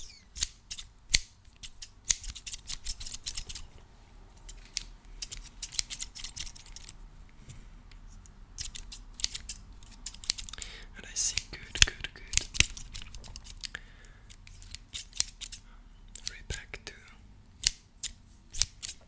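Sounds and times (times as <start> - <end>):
scissors snipping: 0.0 - 3.7, 4.4 - 7.0, 8.2 - 10.7, 11.3 - 15.6, 17.6 - 19.0.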